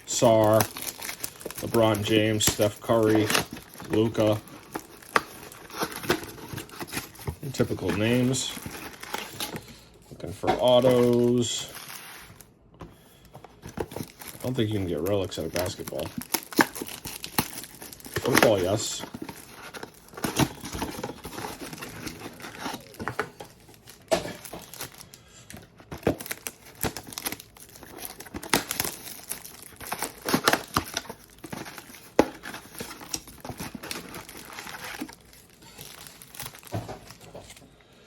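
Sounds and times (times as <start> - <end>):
packaging crinkling and tearing: 0.0 - 37.7.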